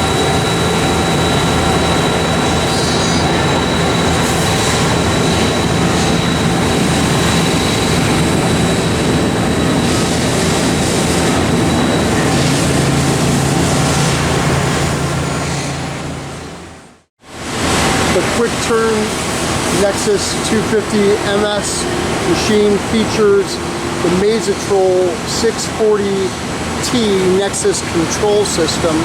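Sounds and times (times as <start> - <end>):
machine low hum: 0.0 - 17.0
machine high whine: 0.0 - 29.0.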